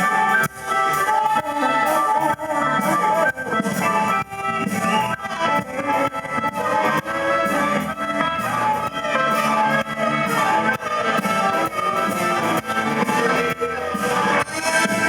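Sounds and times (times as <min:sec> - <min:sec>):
blues band playing live: 0:00.0 - 0:15.0
brass-like lead lines: 0:00.0 - 0:15.0
drum kit: 0:00.0 - 0:15.0.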